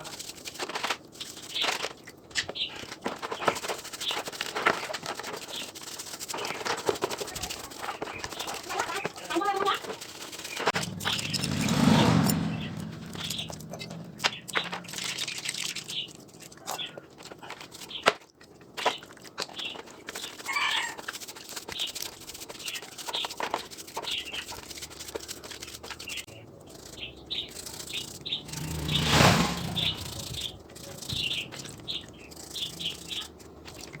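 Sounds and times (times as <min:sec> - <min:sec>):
small birds chirping: 0:01.2 - 0:34.0
loud rushing noise: 0:10.8 - 0:15.0, 0:28.2 - 0:30.5.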